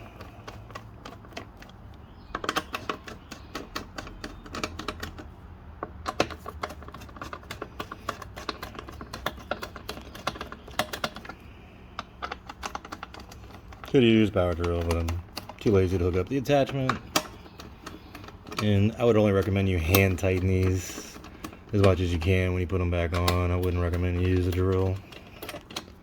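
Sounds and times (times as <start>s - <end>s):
socket ratchet clicking: 0.0s - 26.0s.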